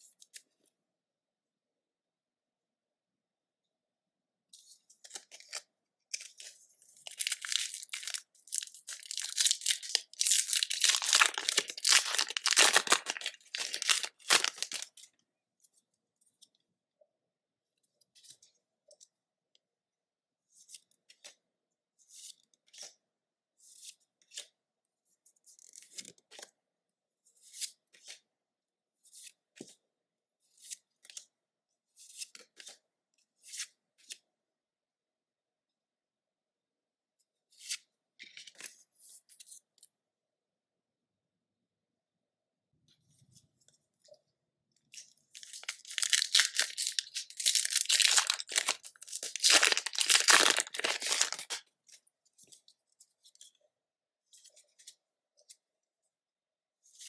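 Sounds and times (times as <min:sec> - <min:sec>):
foil wrapper tearing and crinkling: 0:07.0 - 0:14.9, 0:45.4 - 0:51.6.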